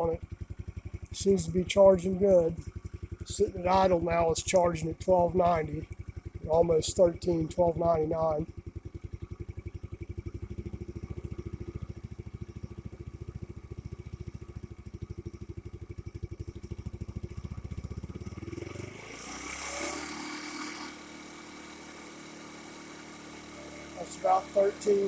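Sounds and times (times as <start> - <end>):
steady low hum: 0.0 - 0.2, 0.8 - 8.9
scooter engine idling: 0.0 - 25.0.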